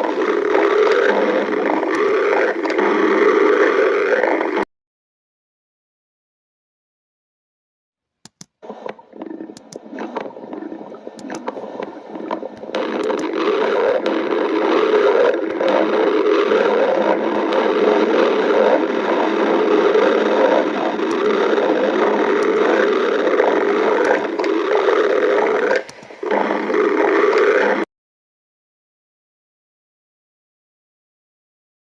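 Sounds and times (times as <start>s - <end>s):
stomach growling: 0.0s - 4.7s, 8.6s - 27.9s.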